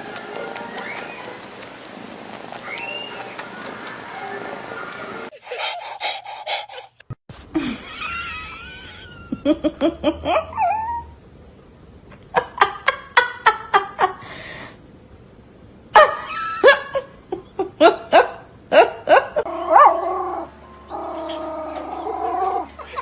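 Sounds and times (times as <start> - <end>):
person laughing: 22.2 - 23.0.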